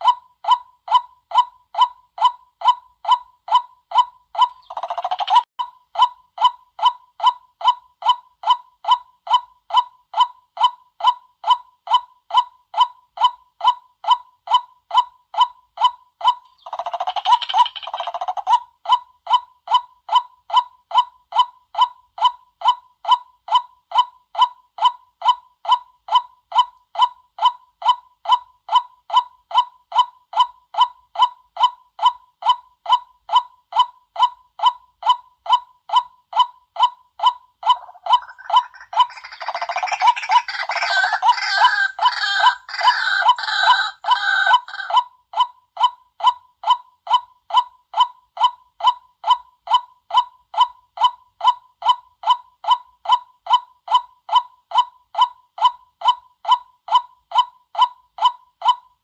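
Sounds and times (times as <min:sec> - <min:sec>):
waterhen calling: 0:37.7 - 0:45.0.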